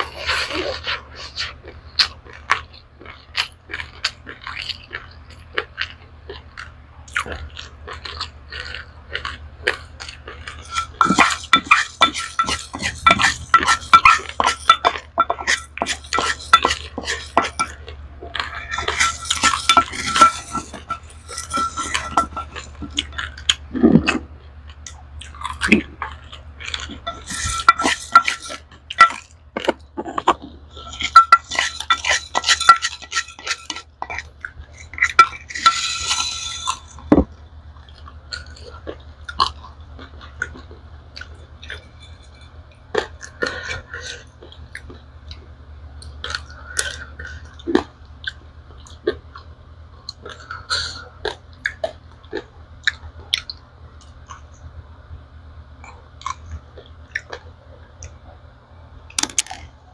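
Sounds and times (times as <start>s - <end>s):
crunchy chewing: 0.0s - 54.6s
low hum: 9.9s - 43.6s
plastic ladle scraping rice: 10.4s - 23.2s, 26.8s - 29.2s, 30.2s - 37.2s.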